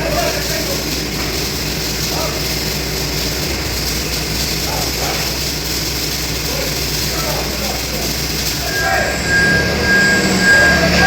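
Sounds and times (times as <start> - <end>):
hiss: 0.0 - 11.0
low hum: 8.7 - 11.0.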